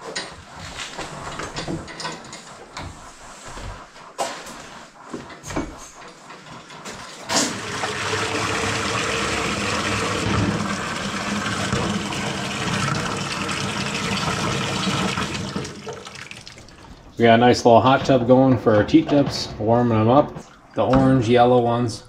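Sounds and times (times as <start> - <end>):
tap water running into tub: 7.3 - 17.2, 20.2 - 21.8.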